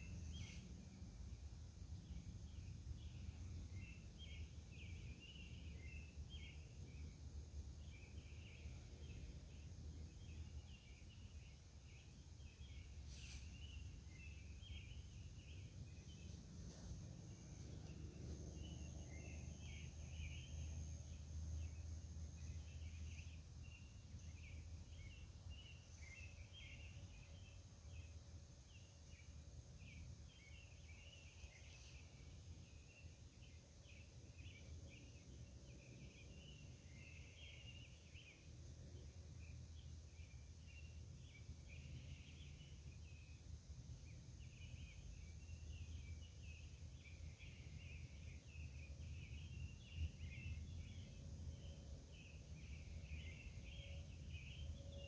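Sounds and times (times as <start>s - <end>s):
continuous high chirping: 0.0s - 55.0s.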